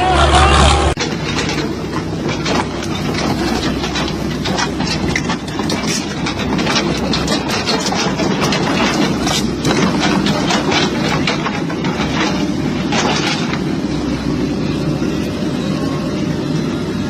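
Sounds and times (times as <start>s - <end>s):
heavy machine engine running: 0.0s - 17.0s
quick clicks and rattles: 1.0s - 14.0s.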